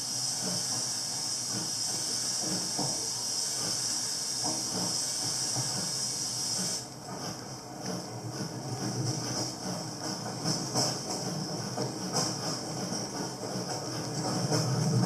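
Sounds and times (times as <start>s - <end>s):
loud steam hiss: 0.0s - 6.9s.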